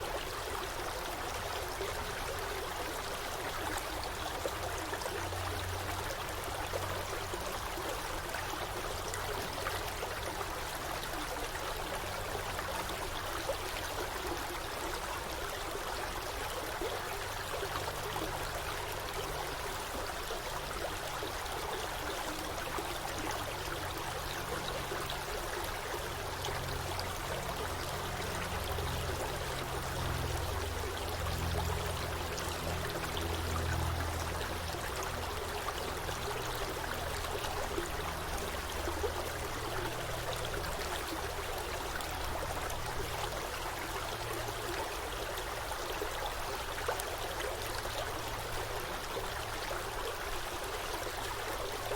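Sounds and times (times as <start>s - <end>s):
stream flowing: 0.0s - 51.9s.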